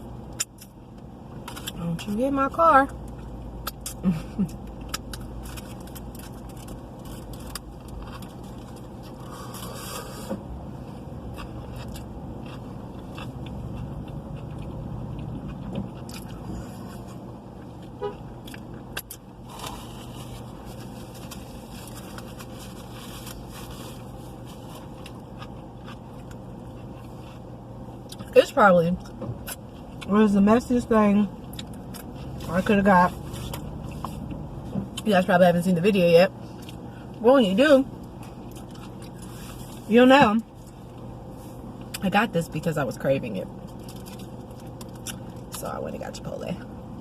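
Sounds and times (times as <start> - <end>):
car interior hum: 0.0 - 47.0
food wrapper rustling: 5.1 - 9.8, 19.4 - 25.2, 43.6 - 45.4.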